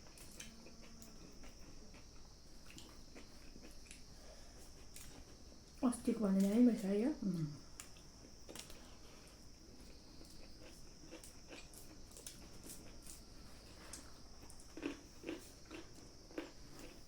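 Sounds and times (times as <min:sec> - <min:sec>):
person chewing food: 0:00.0 - 0:05.8, 0:07.8 - 0:17.0.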